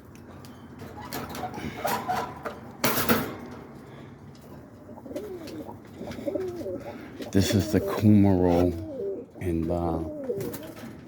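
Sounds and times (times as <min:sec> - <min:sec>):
pigeons cooing: 0:00.9 - 0:02.5, 0:03.9 - 0:11.0.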